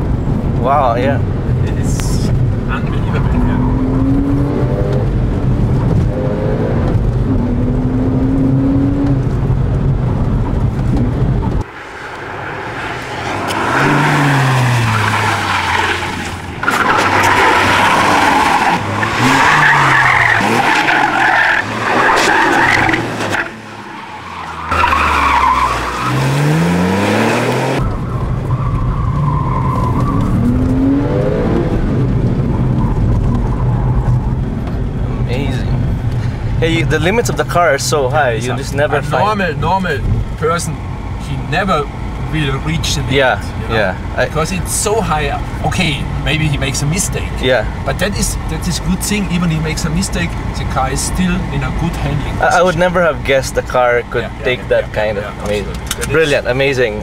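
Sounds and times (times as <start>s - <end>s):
car engine revving: 1.2s - 57.0s
tyres squealing: 13.3s - 27.8s.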